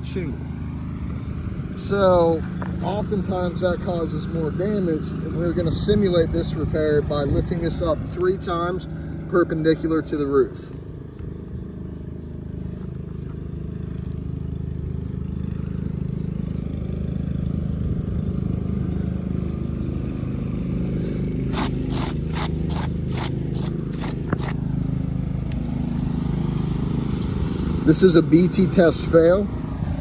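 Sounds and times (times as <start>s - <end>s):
shingle scraping: 21.5s - 24.7s.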